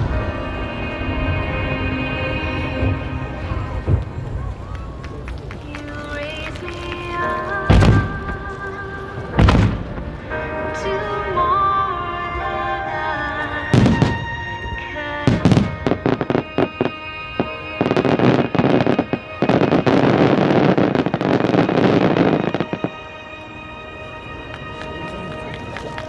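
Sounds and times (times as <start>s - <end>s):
music: 0.0s - 26.0s
fireworks crackling: 3.5s - 10.6s, 13.7s - 26.0s
fireworks booming: 7.7s - 8.5s, 9.2s - 10.2s, 13.7s - 14.7s, 15.3s - 23.0s.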